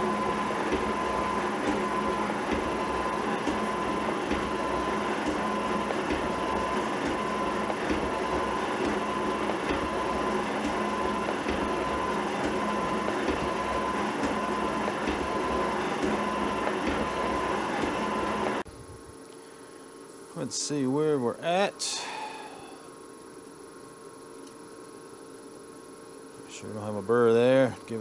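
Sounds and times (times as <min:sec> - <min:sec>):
metal shaper running: 0:00.0 - 0:18.6
steady hum: 0:00.0 - 0:28.0.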